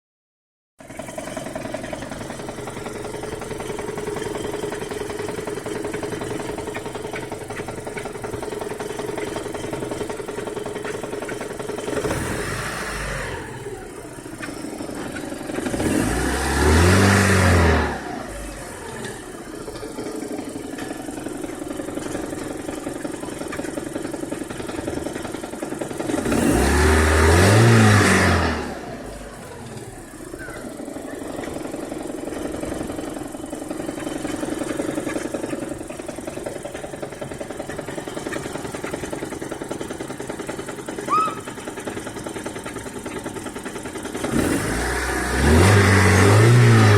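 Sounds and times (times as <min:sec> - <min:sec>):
car engine idling with knock: 0:00.8 - 0:46.9
engine revving: 0:00.9 - 0:19.8, 0:23.6 - 0:46.9.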